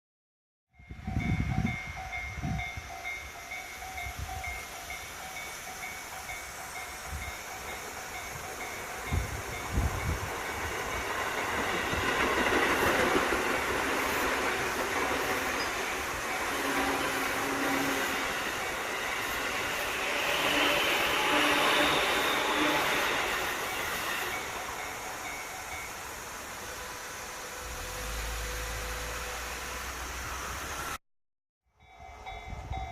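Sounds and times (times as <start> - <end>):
level-crossing bell clanging: 0.8 - 13.0, 13.7 - 26.2, 31.8 - 32.9
train wheels rumbling on rails: 0.8 - 31.0.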